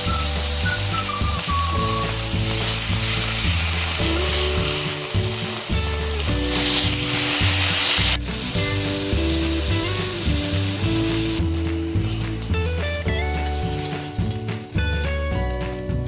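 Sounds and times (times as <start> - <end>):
food sizzling in a pan: 0.0 - 14.6
background music: 0.0 - 16.0.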